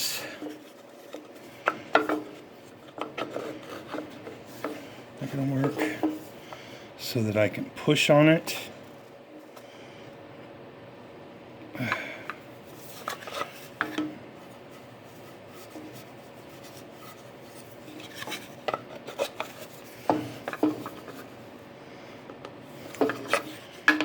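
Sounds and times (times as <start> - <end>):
wooden parts knocking and rubbing: 0.4 - 6.3, 12.8 - 14.2, 15.4 - 21.3, 22.4 - 24.0.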